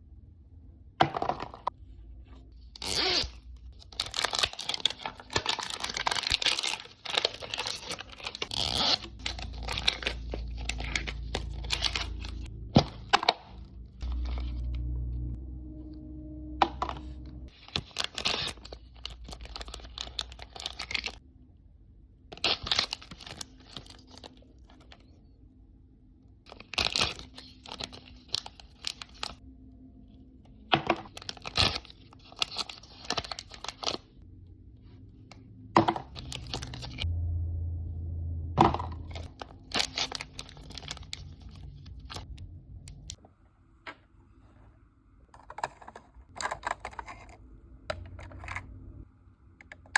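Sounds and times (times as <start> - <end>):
plastic wrapping tearing and crinkling: 2.7 - 14.8, 17.5 - 21.2, 22.4 - 24.9, 26.5 - 29.4, 31.0 - 34.1, 36.1 - 37.1, 39.0 - 42.3.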